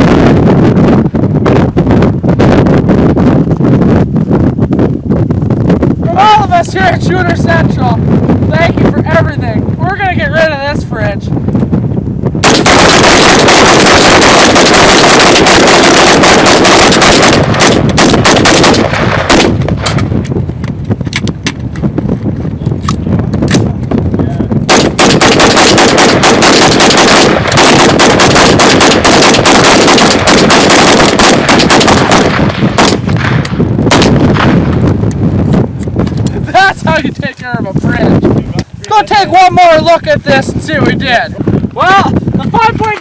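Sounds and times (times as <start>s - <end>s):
rapid rifle fire: 12.4s - 20.0s, 24.7s - 34.8s.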